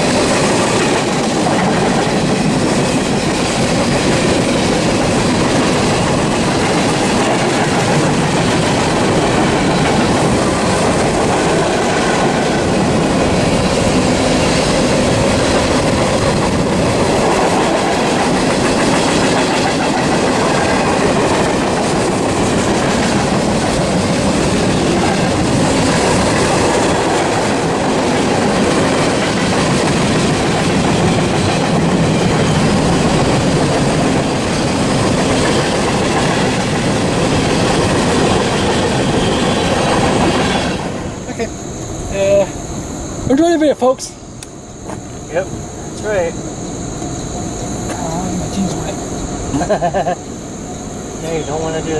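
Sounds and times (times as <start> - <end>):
freight train wheels rumbling on rails: 0.0 - 51.9.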